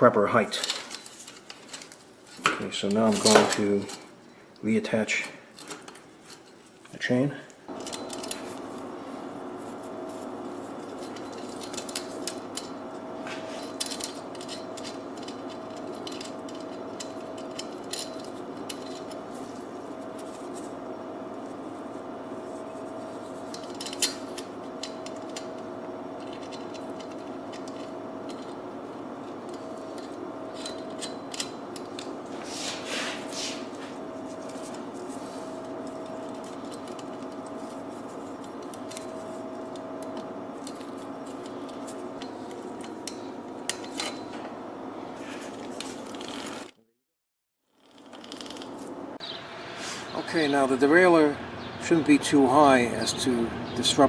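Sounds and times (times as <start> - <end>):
steady background hum: 0.0 - 46.9, 47.7 - 54.0
bicycle chain clicking and clinking: 13.5 - 19.2, 26.2 - 28.6, 47.8 - 48.8.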